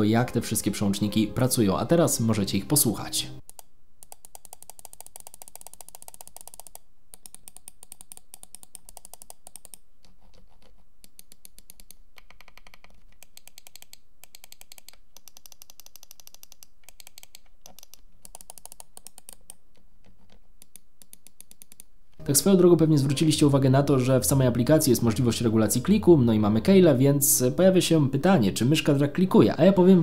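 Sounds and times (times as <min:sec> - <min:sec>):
mouse buttons clicking rapidly: 0:03.4 - 0:21.9.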